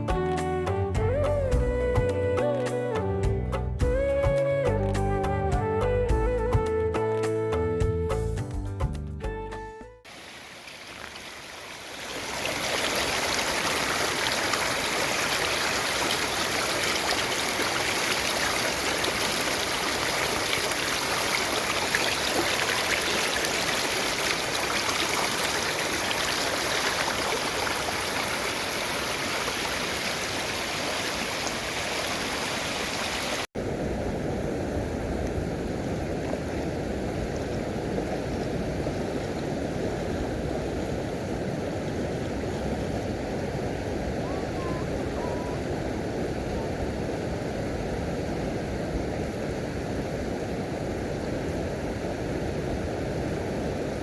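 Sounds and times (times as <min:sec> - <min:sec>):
waterfall rushing: 0:10.1 - 0:33.8, 0:43.1 - 0:47.5.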